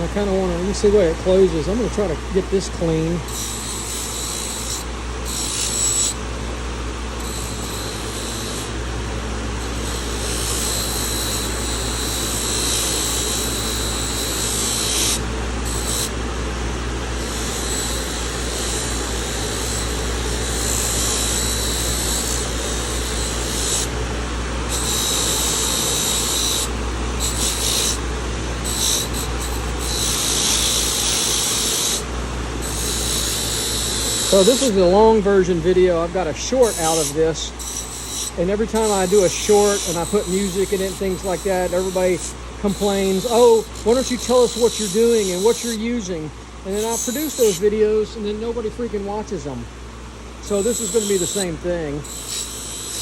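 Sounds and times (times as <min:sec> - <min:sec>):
power tool motor running: 0:00.0 - 0:53.0
knife scratching against tool: 0:03.3 - 0:06.2, 0:07.2 - 0:08.7, 0:09.7 - 0:16.1, 0:17.2 - 0:23.9, 0:24.7 - 0:28.0, 0:28.6 - 0:32.0, 0:32.6 - 0:35.0, 0:36.6 - 0:45.8, 0:46.7 - 0:47.7, 0:50.4 - 0:53.0.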